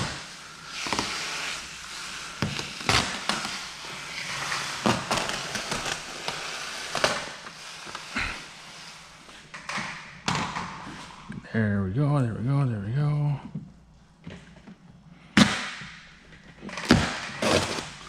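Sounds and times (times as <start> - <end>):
plastic film scraping and crackling: 0.0 - 9.4.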